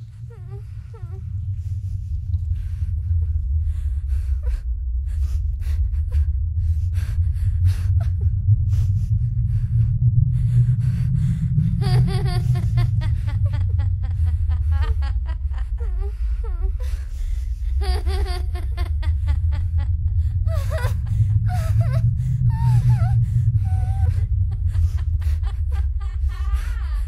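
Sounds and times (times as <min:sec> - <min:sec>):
steady low rumble: 0:00.0 - 0:27.0.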